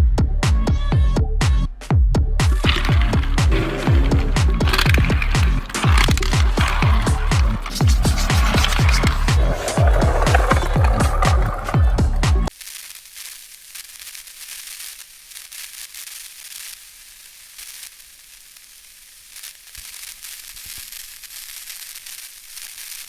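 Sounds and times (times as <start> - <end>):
music: 0.0 - 12.5
crackling static hiss: 2.5 - 23.0.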